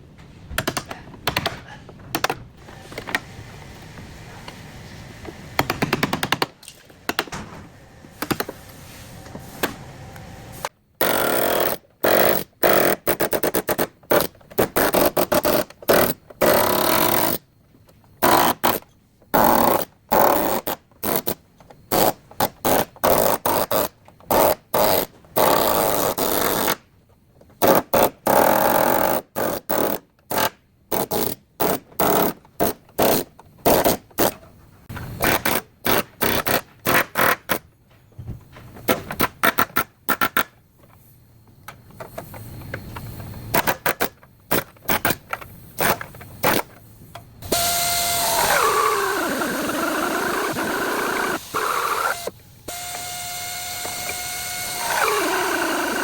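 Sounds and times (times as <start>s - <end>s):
power tool buzzing on car panels: 47.4s - 56.0s.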